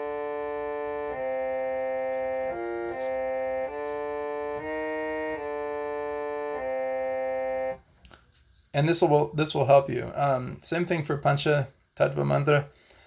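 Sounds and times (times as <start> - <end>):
harmonium melody: 0.0 - 7.8.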